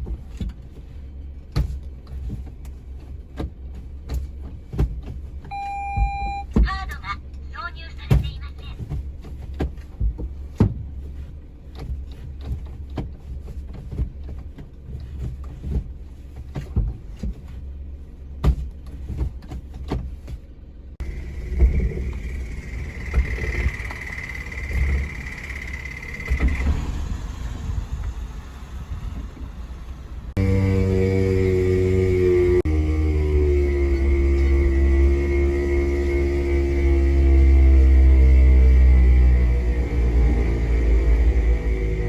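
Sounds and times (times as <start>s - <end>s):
drivetrain rumble with knocks: 0.0s - 42.0s
high whine: 21.0s - 42.0s.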